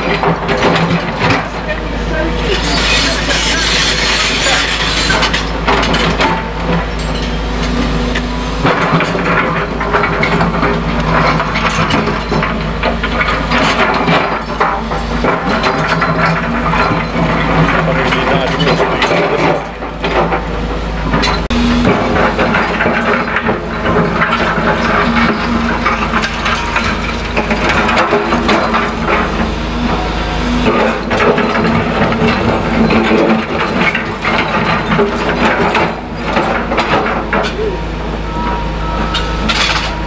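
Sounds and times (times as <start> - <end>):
rubble crunching and clattering: 0.0 - 37.6
excavator diesel engines running: 0.0 - 40.0.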